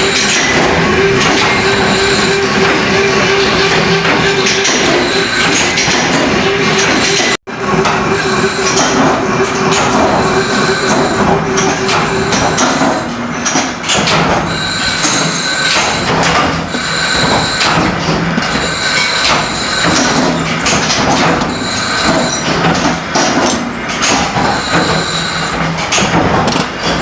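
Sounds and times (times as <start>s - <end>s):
high ringing tones: 0.0s - 13.1s, 18.5s - 20.4s
metallic grinding machinery: 0.0s - 27.0s.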